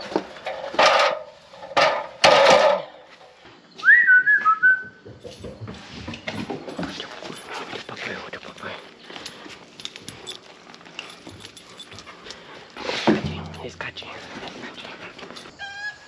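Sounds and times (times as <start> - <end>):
rustling or bumping: 0.0 - 2.9, 12.8 - 15.5
short whistle: 3.8 - 4.9.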